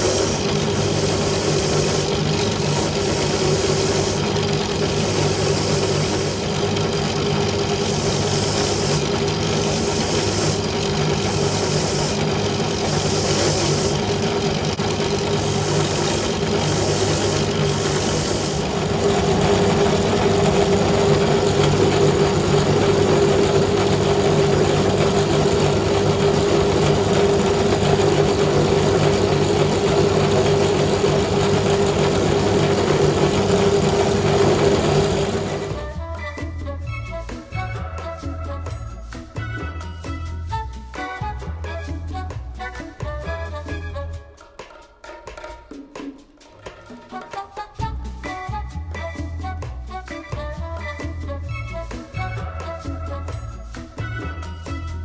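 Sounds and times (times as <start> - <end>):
motor-driven machine humming: 0.0 - 36.0.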